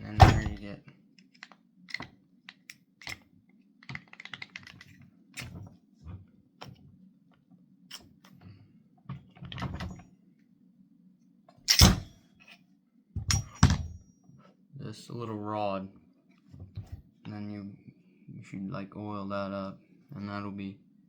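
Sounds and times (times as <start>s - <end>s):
metallic clicks of rifle parts: 1.2s - 3.2s, 3.8s - 5.5s.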